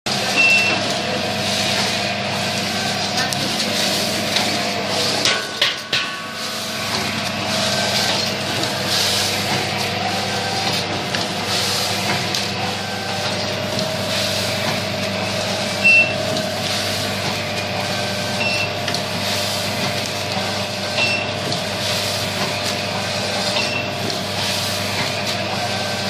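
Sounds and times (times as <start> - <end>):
hissy mechanical clatter: 0.1 - 26.0
packing machine motor hum: 0.1 - 26.0
short high beep: 0.4 - 0.8, 15.8 - 16.2.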